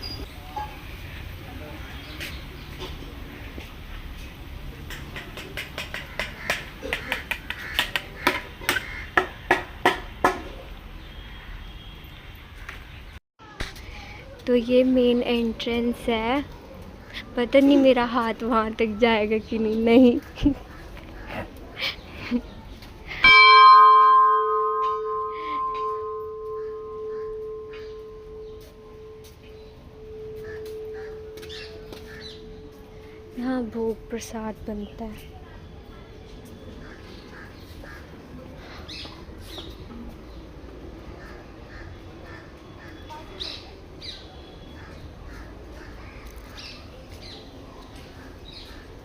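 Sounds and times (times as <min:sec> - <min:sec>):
sharp irregular clicks and knocks: 0:04.9 - 0:10.4
temple bell ringing: 0:23.2 - 0:34.6.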